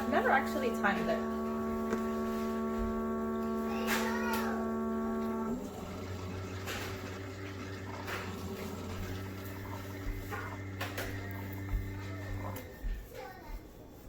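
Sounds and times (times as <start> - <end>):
higher hum: 0.0 - 12.8
coffee maker humming: 0.0 - 14.0
water bubbling: 4.6 - 12.5.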